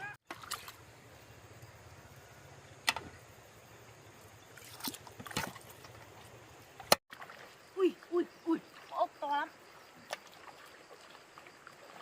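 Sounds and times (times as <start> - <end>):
splashes: 0.0 - 0.9, 4.5 - 12.0
shallow water sloshing: 4.4 - 12.0.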